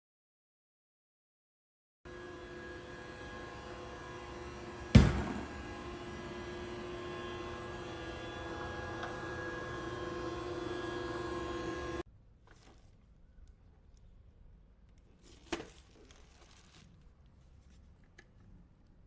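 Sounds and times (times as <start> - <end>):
robot vacuum motor hum: 2.1 - 12.0
loud thump: 4.9 - 5.6.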